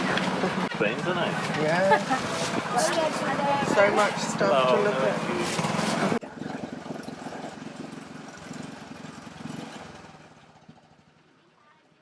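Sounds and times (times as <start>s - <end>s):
small motorbike engine running: 0.0s - 12.0s.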